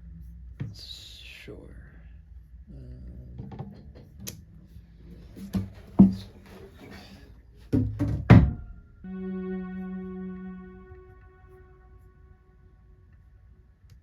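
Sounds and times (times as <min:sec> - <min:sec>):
sustained synth note: 0:08.6 - 0:13.8.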